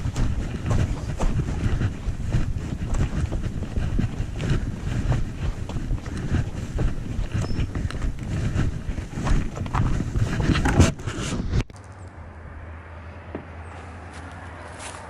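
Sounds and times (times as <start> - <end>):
footsteps: 0.0 - 11.7, 13.4 - 15.0
wind rumbling on microphone: 0.0 - 11.8.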